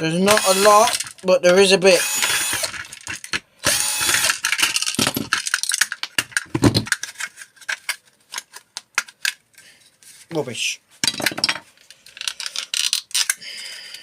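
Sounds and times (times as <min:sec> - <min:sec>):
tools and metal parts clicking: 0:00.3 - 0:01.2.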